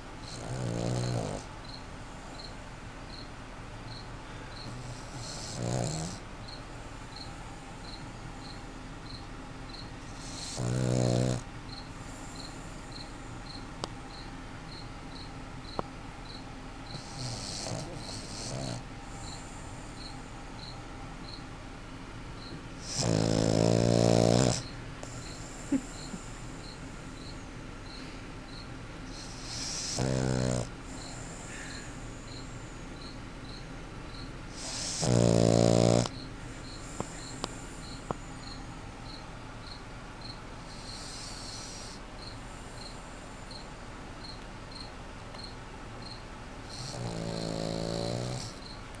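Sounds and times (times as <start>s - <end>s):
dog snoring loudly: 0.2s - 1.5s, 4.6s - 6.2s, 10.1s - 13.0s, 16.9s - 20.2s, 22.8s - 26.8s, 29.1s - 33.1s, 34.5s - 38.6s, 40.7s - 43.7s, 46.6s - 48.7s.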